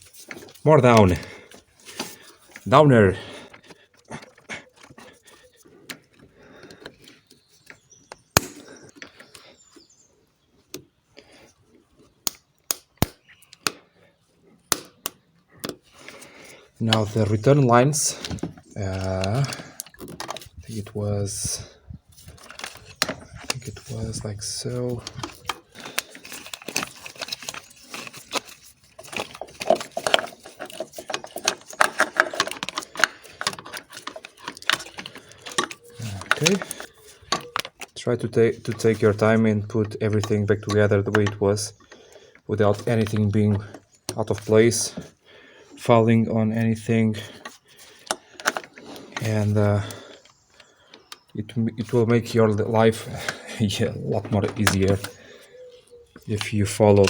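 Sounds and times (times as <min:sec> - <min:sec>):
tools clicking and knocking: 0:18.2 - 0:20.6, 0:24.7 - 0:38.0, 0:38.6 - 0:42.0, 0:47.3 - 0:51.3, 0:53.0 - 0:55.2.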